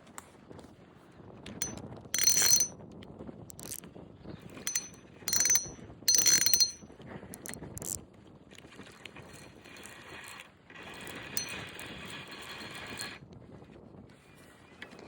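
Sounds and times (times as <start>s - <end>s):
reel ticking: 1.6s - 2.7s, 3.5s - 3.8s, 4.6s - 6.8s, 7.4s - 8.0s, 11.0s - 11.9s
fishing reel drag buzzing: 1.7s - 2.7s, 3.5s - 3.8s, 4.7s - 6.8s, 7.4s - 8.0s, 11.0s - 12.4s.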